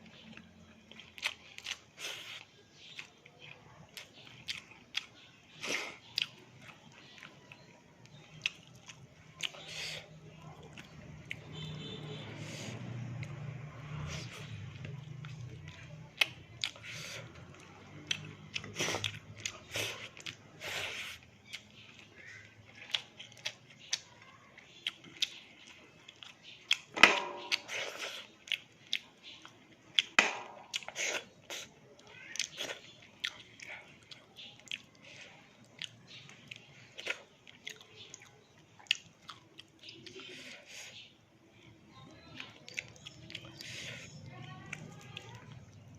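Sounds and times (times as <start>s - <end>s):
chewing with sharp crunches: 0.0s - 45.9s.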